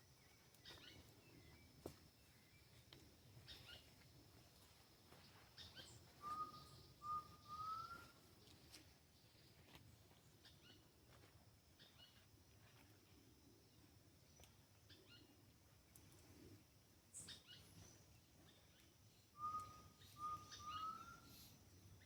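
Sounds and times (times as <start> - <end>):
short chirping calls: 19.4 - 21.6.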